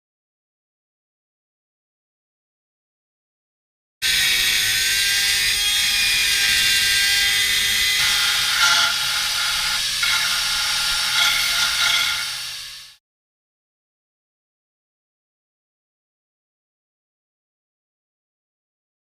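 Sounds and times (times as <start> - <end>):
power tool whining on sheet metal: 4.0 - 13.0.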